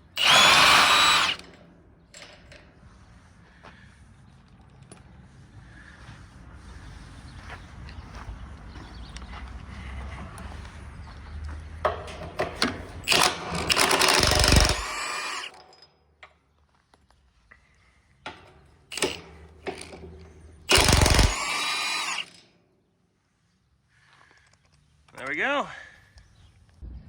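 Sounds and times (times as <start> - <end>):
power tool running: 0.0 - 1.5, 13.0 - 15.6, 18.9 - 20.0, 20.7 - 22.4.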